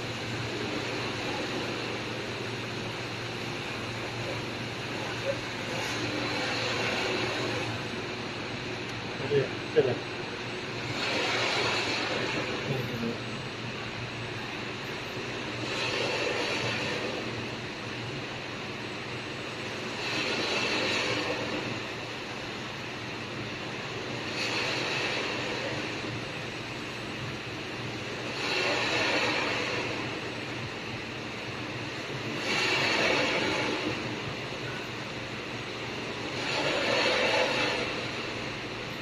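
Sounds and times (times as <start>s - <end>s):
welding machine hum: 0.0s - 39.0s
hissing bursts: 10.6s - 13.8s, 15.4s - 18.2s, 19.6s - 22.6s, 23.7s - 27.0s, 27.9s - 38.6s.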